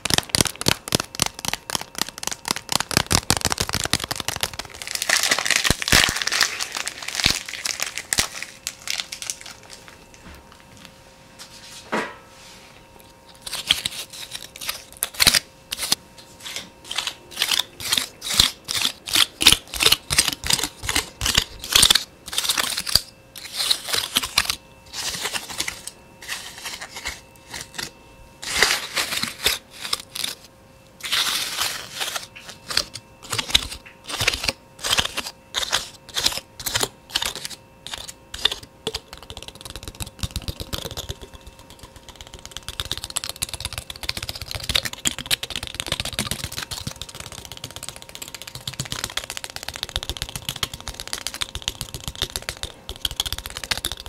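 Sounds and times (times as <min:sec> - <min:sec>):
fast tapping: 0:00.0 - 0:05.0, 0:38.9 - 0:54.0.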